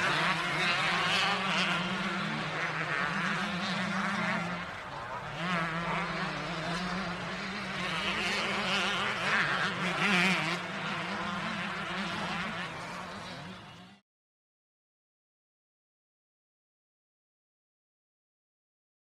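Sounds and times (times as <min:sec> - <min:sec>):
dirt bike engine revving: 0:00.0 - 0:13.8.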